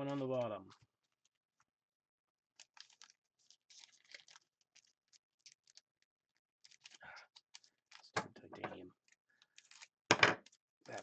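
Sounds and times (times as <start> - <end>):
card pack wrappers crinkling: 2.5 - 8.2, 9.0 - 11.0.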